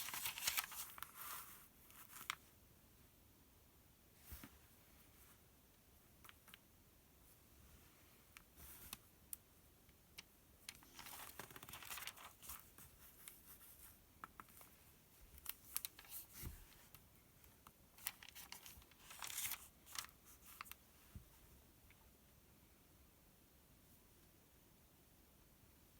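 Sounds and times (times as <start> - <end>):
paper pages rustling: 0.0 - 2.4, 10.7 - 14.8, 15.4 - 17.0, 18.0 - 20.8.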